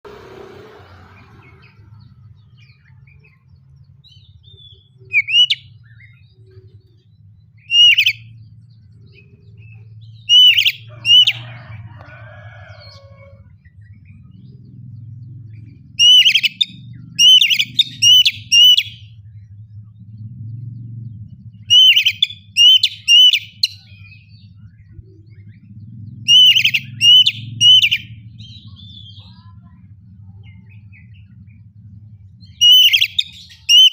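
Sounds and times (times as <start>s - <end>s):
steady low hum: 0.0s - 33.9s
bird singing whistled notes: 2.4s - 6.8s, 7.5s - 11.5s, 16.0s - 19.3s, 21.6s - 24.7s, 26.3s - 29.2s, 32.4s - 33.9s.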